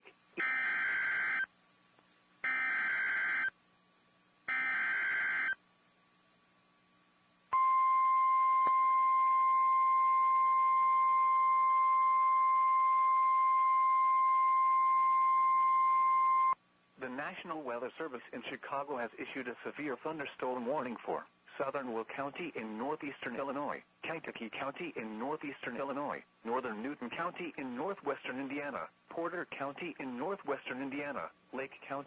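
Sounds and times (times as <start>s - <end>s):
single-tone warning alarm: 0.4s - 1.5s, 2.4s - 3.5s, 4.5s - 5.6s, 7.6s - 16.6s.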